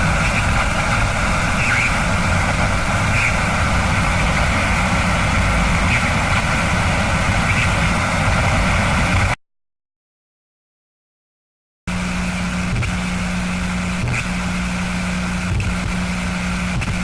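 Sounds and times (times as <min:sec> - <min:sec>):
dense rumbling drone: 0:00.0 - 0:09.4.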